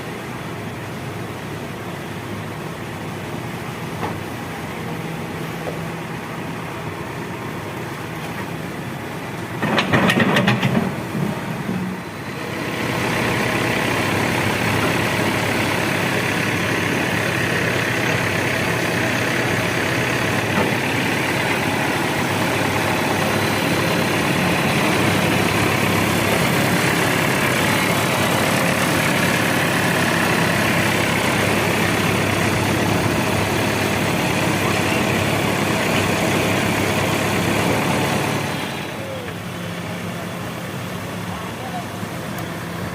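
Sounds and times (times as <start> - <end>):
heavy machinery diesel engine: 0.0 - 42.9
loud clatter of knocks: 9.6 - 11.9.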